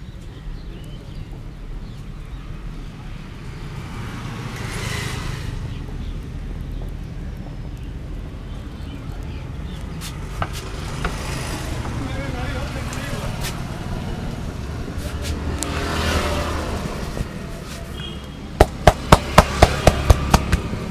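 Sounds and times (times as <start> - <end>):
road traffic rumbling: 0.0 - 20.9
vehicle passing: 2.5 - 7.5, 8.5 - 20.9
sharp taps: 18.6 - 20.9.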